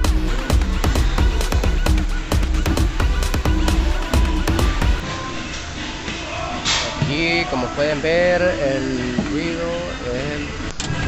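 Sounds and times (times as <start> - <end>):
electronic music with heavy beat: 0.0 - 5.0.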